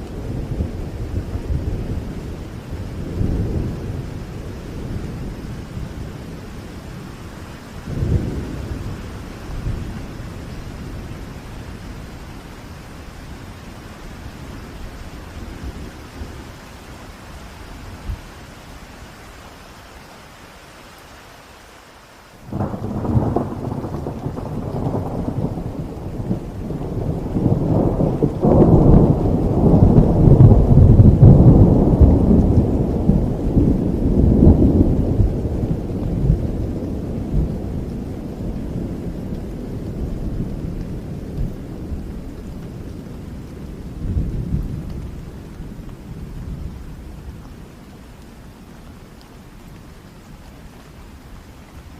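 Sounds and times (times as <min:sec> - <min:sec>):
steady rain: 0:00.0 - 0:51.9
thunder rolling: 0:22.5 - 0:44.9.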